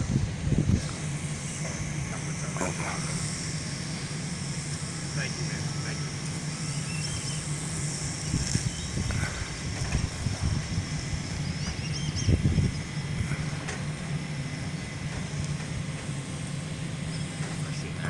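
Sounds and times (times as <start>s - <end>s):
fire truck engine droning: 0.0s - 18.0s
faint high chirps: 4.8s - 9.4s.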